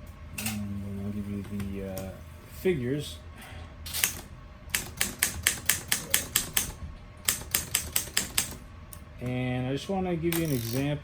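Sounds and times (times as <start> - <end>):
manual typewriter typing: 4.0 - 8.6.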